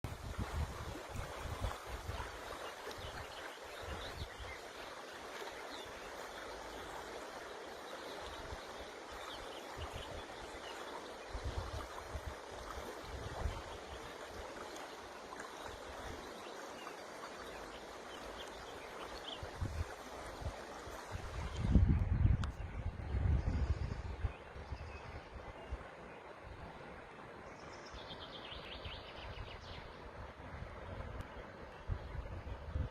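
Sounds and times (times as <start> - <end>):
wind buffeting microphone: 0.0 - 4.6, 11.2 - 14.0, 19.4 - 25.9
river water rushing: 0.1 - 21.6.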